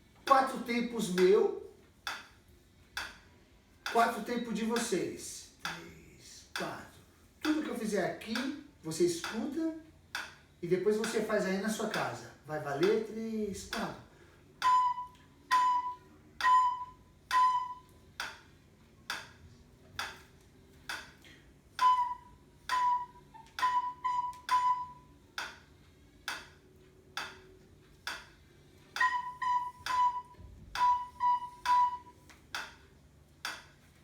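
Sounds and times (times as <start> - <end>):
metronome ticking: 0.2 - 33.9
recorder playing short notes: 14.6 - 18.1, 21.7 - 25.6, 28.9 - 32.8.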